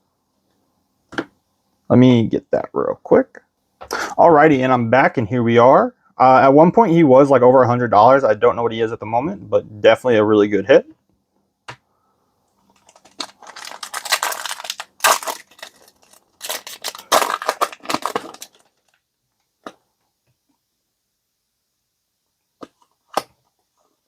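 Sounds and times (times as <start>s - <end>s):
foil wrapper crinkling and tearing: 12.7s - 19.0s.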